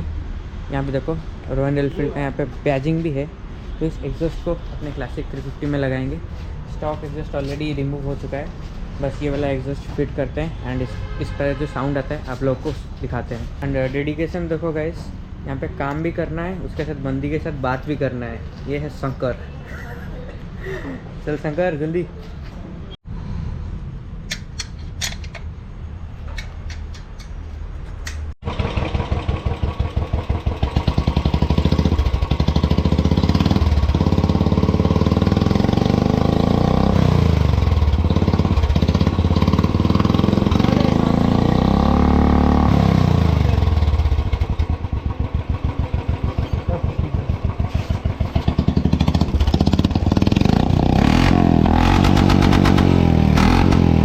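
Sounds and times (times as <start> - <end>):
light metallic clicks and clatter: 26.2 - 28.3
motorcycle engine revving: 28.4 - 54.0.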